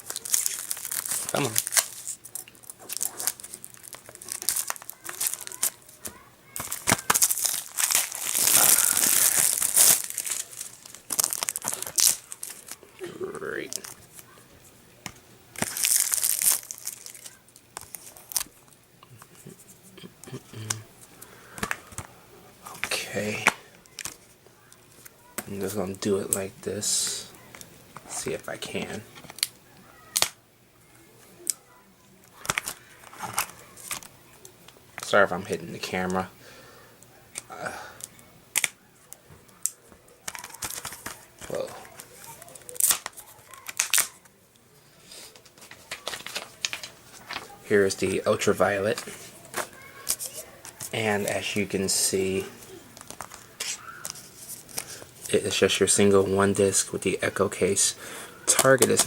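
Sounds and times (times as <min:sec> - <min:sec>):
plastic wrap crinkling: 0:00.0 - 0:19.7, 0:22.7 - 0:25.7, 0:31.4 - 0:35.3, 0:37.3 - 0:57.7.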